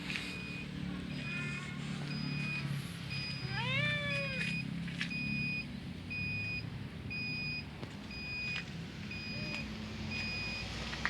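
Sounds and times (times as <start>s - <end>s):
vehicle reversing beeper: 0.2s - 10.8s
cat meowing: 3.4s - 4.5s.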